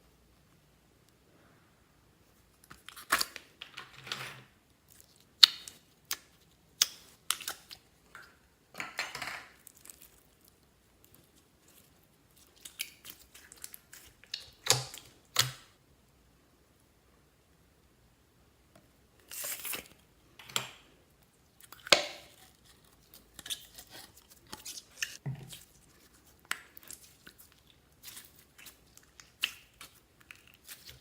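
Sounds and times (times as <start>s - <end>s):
slime clicking and crackling: 4.9s - 8.2s, 9.6s - 15.7s, 21.6s - 31.0s.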